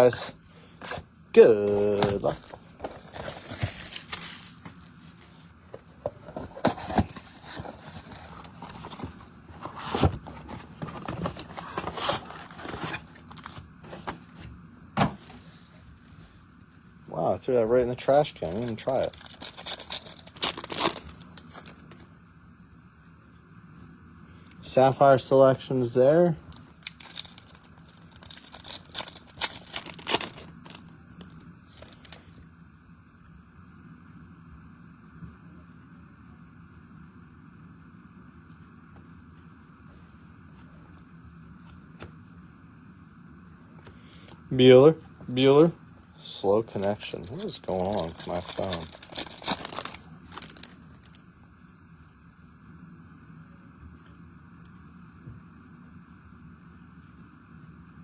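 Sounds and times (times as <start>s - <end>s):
cardboard and wrapper rustling: 0.0s - 16.4s, 17.9s - 22.1s, 26.4s - 32.4s, 46.3s - 51.2s.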